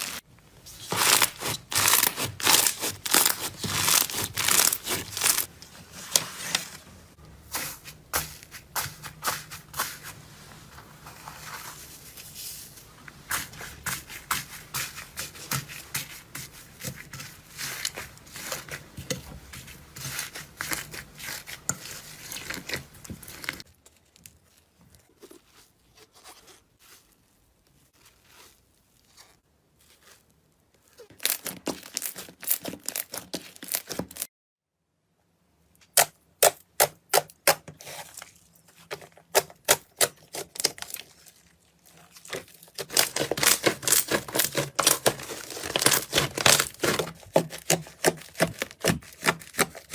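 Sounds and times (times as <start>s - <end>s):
slime crackling and popping: 0.9s - 5.5s.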